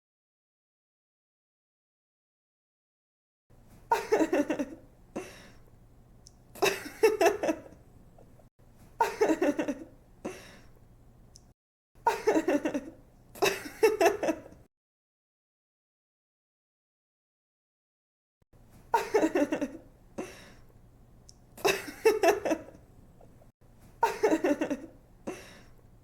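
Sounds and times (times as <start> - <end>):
woman giggling: 3.9 - 5.4, 6.6 - 7.8, 9.0 - 10.4, 12.1 - 14.6, 18.9 - 20.4, 21.6 - 22.8, 24.0 - 25.6.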